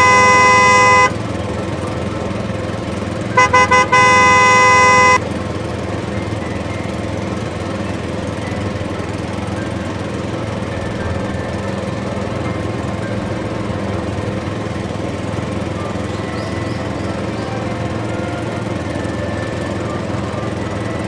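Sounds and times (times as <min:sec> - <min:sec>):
horn toots: 0:00.0 - 0:01.2, 0:03.4 - 0:05.2.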